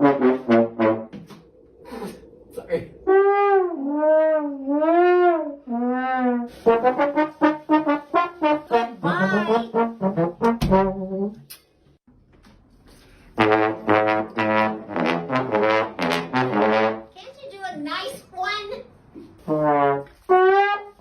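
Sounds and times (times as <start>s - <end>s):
comic trombone notes: 0.0s - 1.3s, 3.1s - 11.4s, 13.4s - 17.1s, 19.4s - 21.0s.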